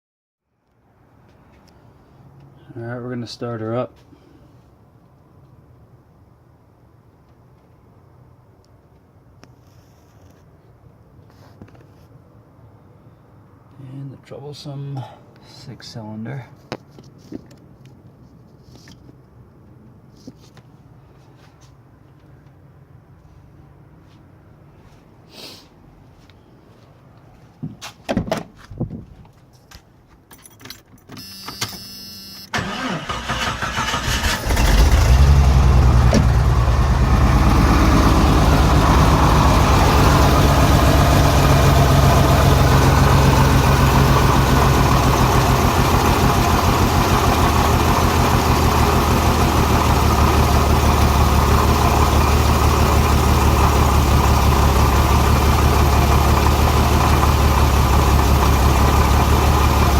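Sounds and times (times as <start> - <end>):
starter cranking engine: 32.6 - 36.3
rough engine idle: 34.6 - 59.9.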